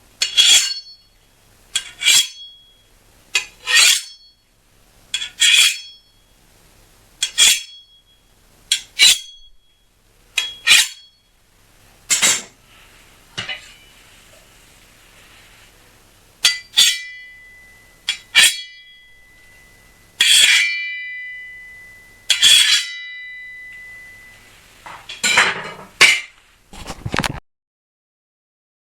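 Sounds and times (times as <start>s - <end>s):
metal blades clashing: 0.2s - 1.0s, 1.8s - 2.5s, 3.4s - 4.2s, 5.2s - 6.0s, 8.7s - 9.4s, 10.4s - 11.1s, 16.4s - 19.0s, 20.2s - 24.3s, 25.1s - 26.3s
long metallic ringing tone: 0.2s - 1.4s, 2.2s - 3.0s, 4.0s - 4.5s, 5.7s - 6.4s, 7.6s - 11.4s, 16.3s - 25.7s.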